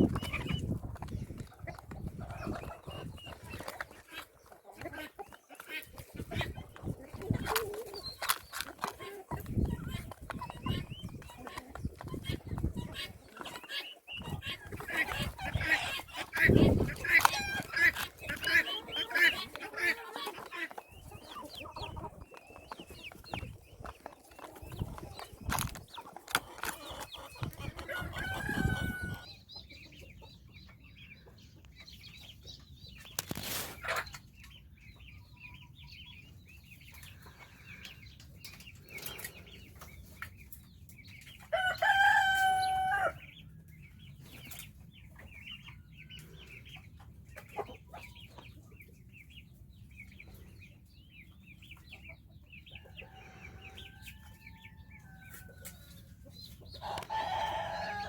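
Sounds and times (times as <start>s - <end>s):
chickens clucking: 0.0s - 58.0s
rooster crowing: 27.9s - 29.2s, 41.5s - 43.2s, 56.8s - 58.0s.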